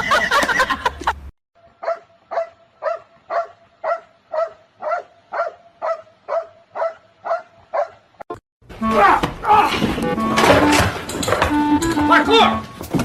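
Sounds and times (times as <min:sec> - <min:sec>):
dog barking: 0:01.8 - 0:08.0.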